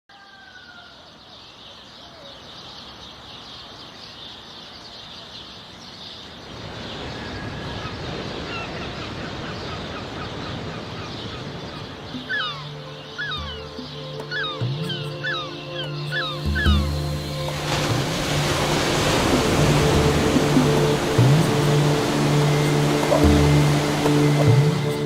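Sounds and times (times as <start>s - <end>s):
birds chirping: 0.1s - 25.0s
steady music tones: 12.0s - 25.0s
steady rushing noise: 17.2s - 25.0s.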